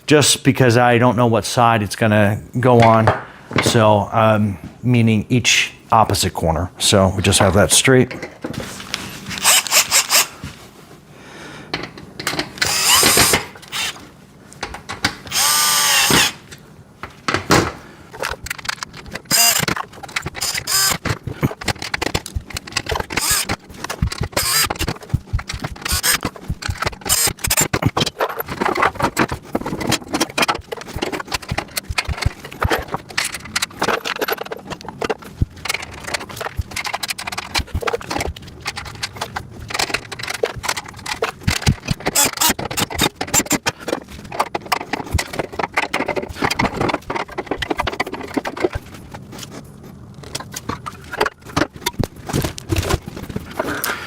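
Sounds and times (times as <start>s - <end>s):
power drill running: 9.4s - 10.3s, 12.6s - 14.0s, 15.3s - 16.4s, 19.3s - 19.7s, 20.4s - 21.0s, 23.1s - 23.6s, 24.2s - 24.9s, 25.7s - 26.2s, 27.0s - 27.6s
small metal clicks and rattles: 18.1s - 49.5s.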